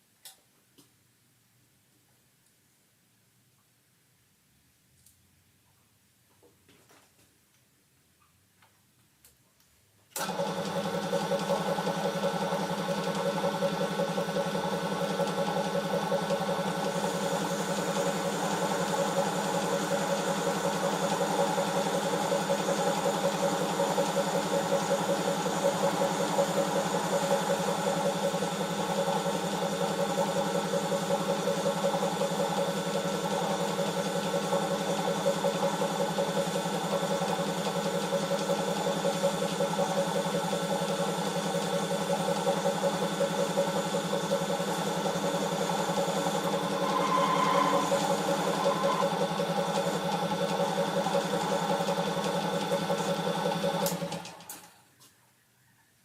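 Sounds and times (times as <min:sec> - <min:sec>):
motor humming: 0:10.2 - 0:54.5.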